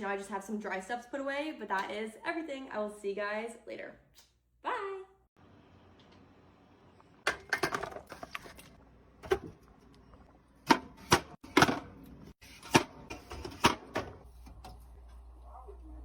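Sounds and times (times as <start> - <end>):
cans and containers clacking: 7.2 - 9.5.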